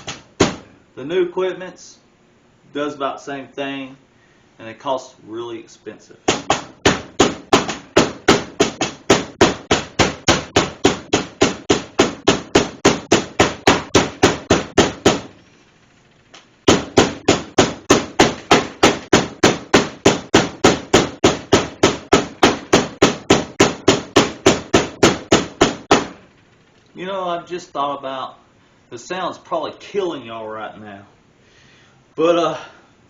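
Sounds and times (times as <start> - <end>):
meat mallet pounding pork: 0.0 - 0.7, 6.3 - 15.3, 16.7 - 26.2.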